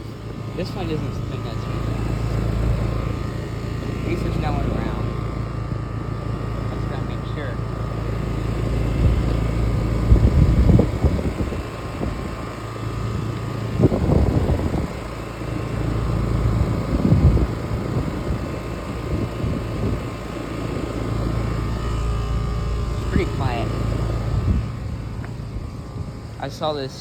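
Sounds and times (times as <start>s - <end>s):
air conditioner unit humming: 0.0s - 27.0s
low rumbles: 15.9s - 27.0s.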